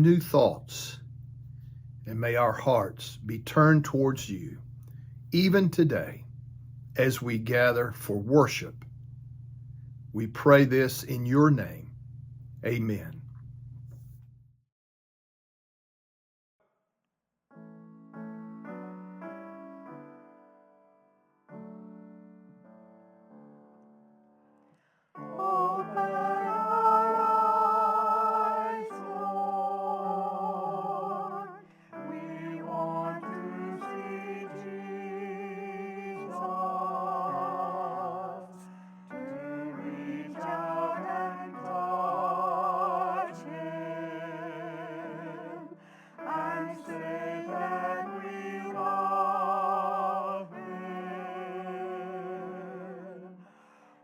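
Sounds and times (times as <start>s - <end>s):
piano accompaniment: 17.5s - 24.6s, 25.2s - 52.6s
person singing with vibrato: 25.2s - 53.6s.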